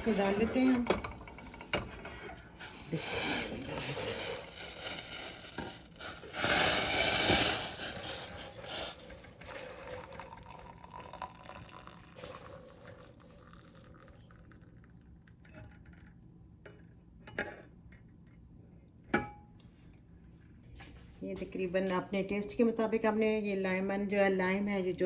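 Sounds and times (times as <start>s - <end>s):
pot and cup clinking: 7.2s - 14.6s
liquid pouring into a cup: 8.6s - 16.1s.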